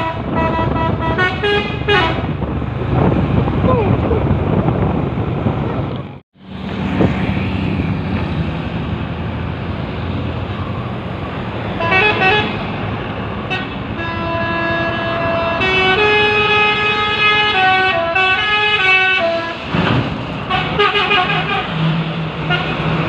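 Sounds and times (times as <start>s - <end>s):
multi-tone horn playing notes: 0.0s - 2.3s, 11.8s - 12.6s, 13.5s - 19.6s
truck engine and road noise: 0.0s - 23.0s.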